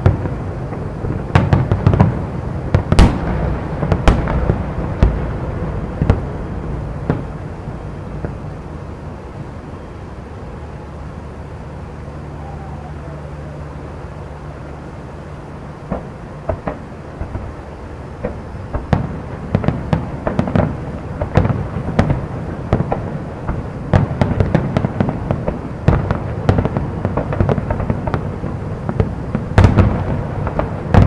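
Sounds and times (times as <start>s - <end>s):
fireworks bangs: 0.0s - 8.8s, 15.8s - 31.0s
steady low hum: 0.0s - 31.0s.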